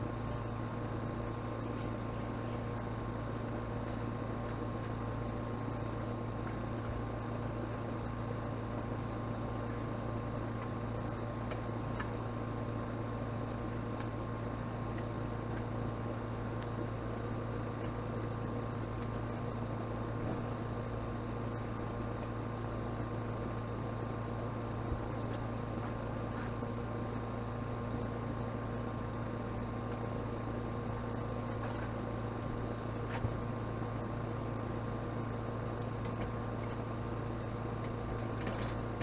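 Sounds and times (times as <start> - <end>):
steady mechanical hum: 0.0 - 39.0.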